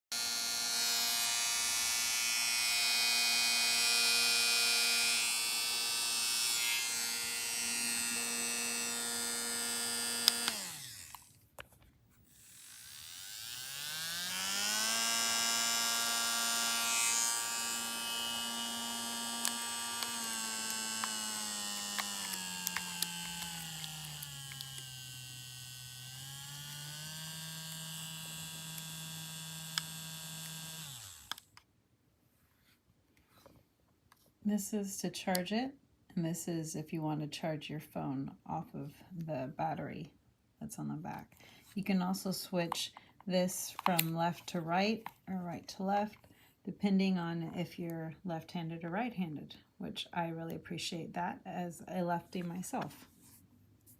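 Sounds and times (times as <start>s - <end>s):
electric nail drill whirring: 0.0s - 11.4s, 12.2s - 31.6s.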